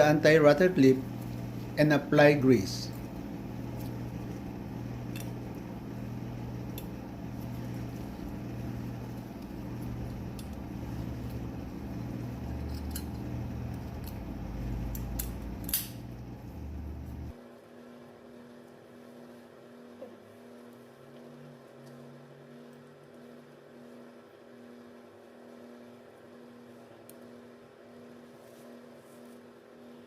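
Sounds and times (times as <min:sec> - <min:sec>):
steady low hum: 0:00.0 - 0:30.0
metal clips clicking: 0:14.8 - 0:16.0.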